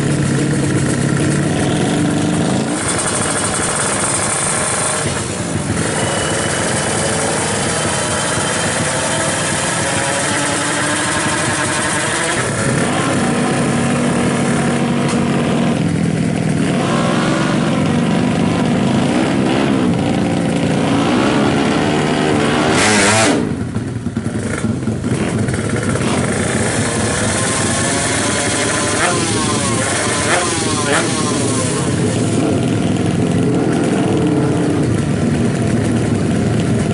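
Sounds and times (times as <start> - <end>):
motorcycle engine revving: 0.0 - 36.9.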